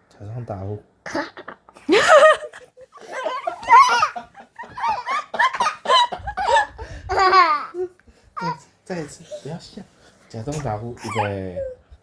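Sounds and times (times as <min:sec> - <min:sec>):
young child giggling: 0:01.1 - 0:08.6, 0:11.0 - 0:11.8.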